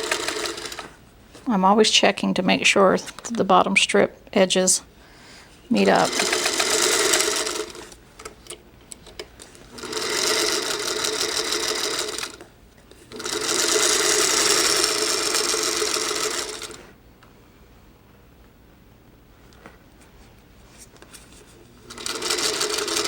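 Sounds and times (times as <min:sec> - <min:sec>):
sewing machine stitching: 0:00.0 - 0:00.9, 0:05.8 - 0:08.0, 0:09.7 - 0:12.4, 0:13.1 - 0:16.9, 0:21.9 - 0:23.0.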